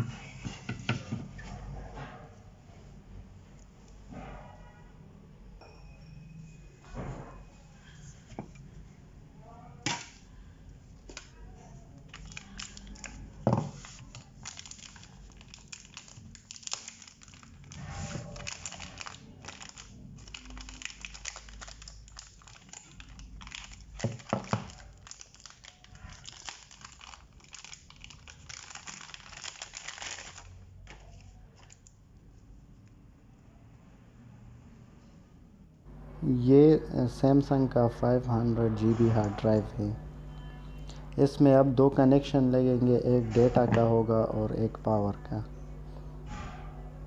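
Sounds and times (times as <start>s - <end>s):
plastic packaging crinkling: 12.1s - 31.9s.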